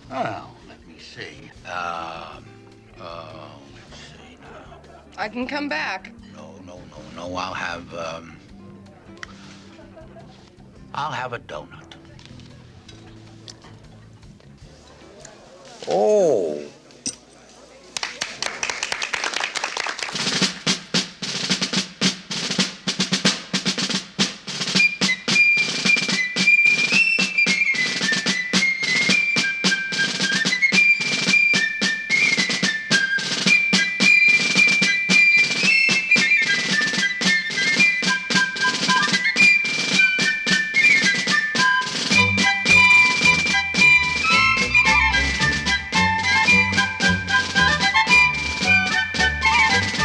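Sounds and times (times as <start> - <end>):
snare drum rhythm: 0.0 - 12.2, 18.6 - 50.0
high melody line: 24.7 - 50.0.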